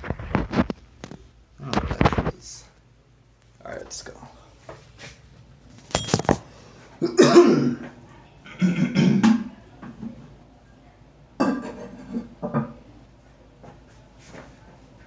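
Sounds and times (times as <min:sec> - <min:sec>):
person clearing throat: 0:07.0 - 0:07.9, 0:08.5 - 0:09.5, 0:11.4 - 0:12.7
person coughing: 0:07.0 - 0:07.9, 0:08.5 - 0:09.4, 0:11.4 - 0:12.3.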